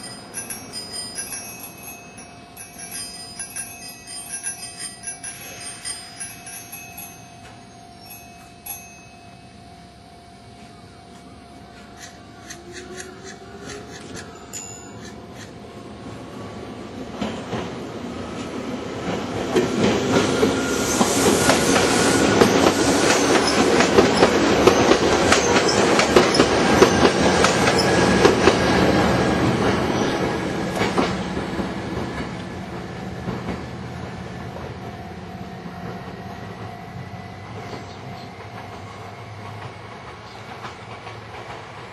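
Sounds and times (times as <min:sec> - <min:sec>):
wheels clicking over rail joints: 0:00.0 - 0:08.9
train passing: 0:00.0 - 0:41.9.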